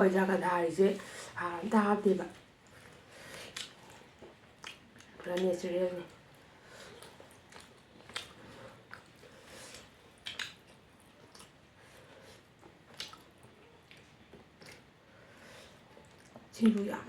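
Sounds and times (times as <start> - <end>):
wet chewing: 2.6 - 16.9
mouth smacking clicks: 3.5 - 5.5, 9.7 - 10.7, 12.9 - 13.3.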